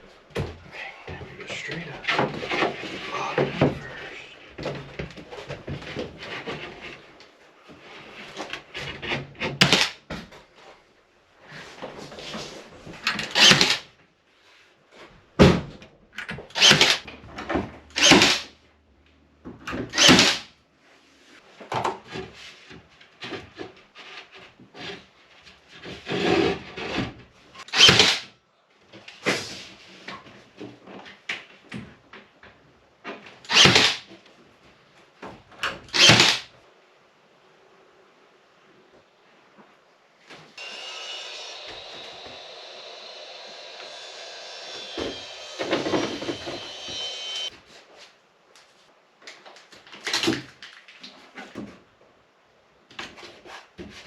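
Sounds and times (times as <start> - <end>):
wood knocking and scraping: 0.3 - 10.4, 40.4 - 47.5.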